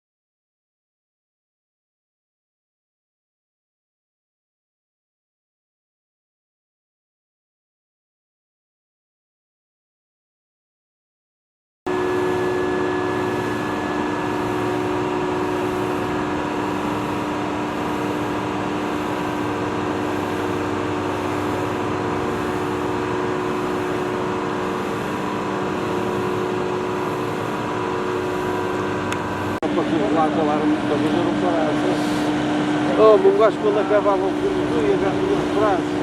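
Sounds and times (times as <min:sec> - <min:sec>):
boat engine running: 0:11.9 - 0:36.0
steady tones: 0:11.9 - 0:36.0.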